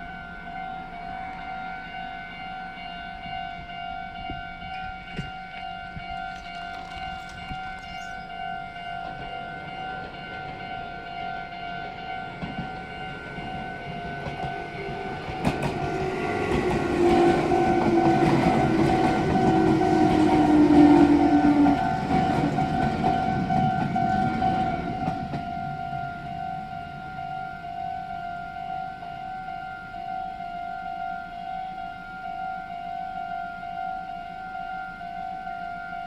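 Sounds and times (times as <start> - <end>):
electric train approaching: 0.0 - 36.0
level crossing warning bell: 0.0 - 36.0
rail clicks: 4.2 - 27.6.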